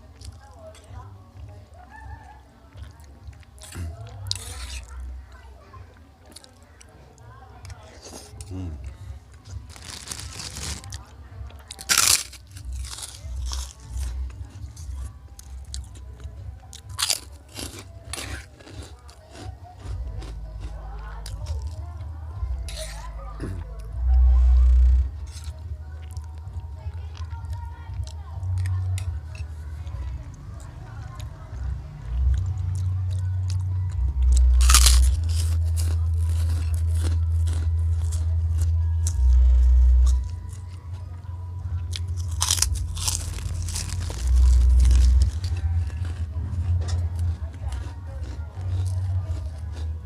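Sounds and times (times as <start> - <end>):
crunching and chewing food: 0.0 - 50.0
background music bass: 19.7 - 50.0
steady low hum: 20.0 - 50.0.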